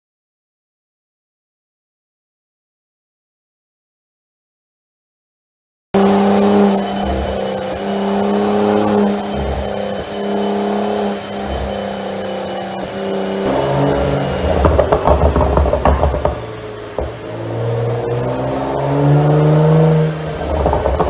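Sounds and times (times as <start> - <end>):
car engine at high revs: 6.0 - 21.0.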